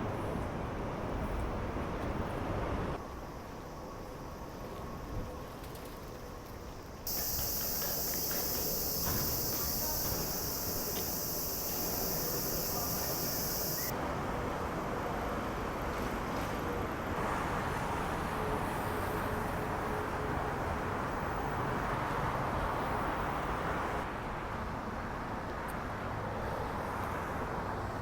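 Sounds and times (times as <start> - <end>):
crickets chirring: 6.8 - 13.9
distant traffic rushing noise: 7.1 - 13.9.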